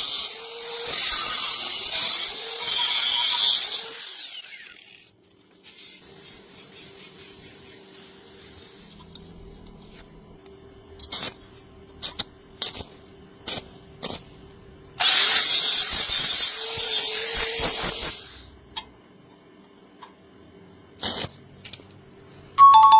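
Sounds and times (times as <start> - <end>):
harsh hissing tool noise: 0.0 - 9.5, 15.0 - 18.6, 21.0 - 21.5.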